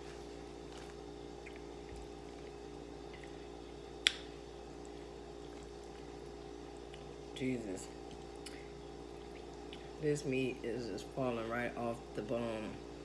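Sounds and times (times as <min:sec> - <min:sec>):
steady low hum: 0:00.0 - 0:13.0
faint chewing: 0:00.1 - 0:07.3.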